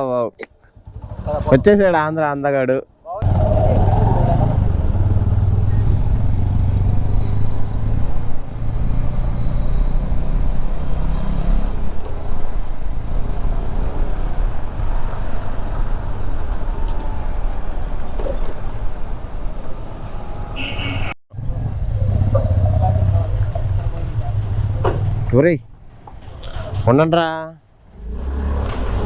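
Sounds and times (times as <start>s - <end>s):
road and wind noise: 0.0s - 29.0s
motorcycle engine running: 0.8s - 1.7s, 3.2s - 16.4s.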